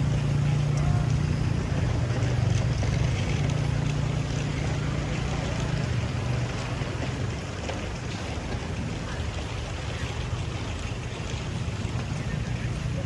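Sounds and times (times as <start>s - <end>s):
low engine drone: 0.0s - 13.0s.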